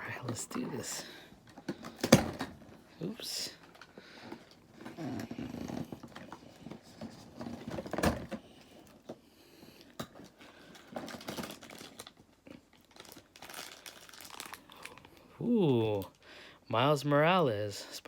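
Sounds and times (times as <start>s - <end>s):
cardboard packaging being handled: 10.7s - 14.7s.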